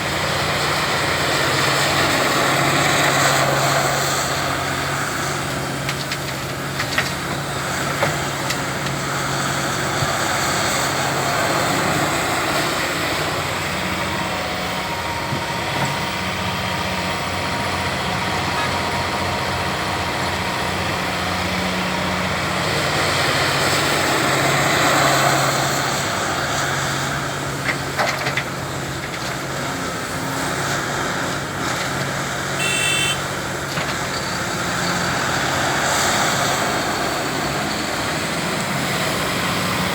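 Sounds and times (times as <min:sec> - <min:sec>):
heavy diesel engine running: 0:00.0 - 0:39.9
short high-pitched beep: 0:32.6 - 0:33.2.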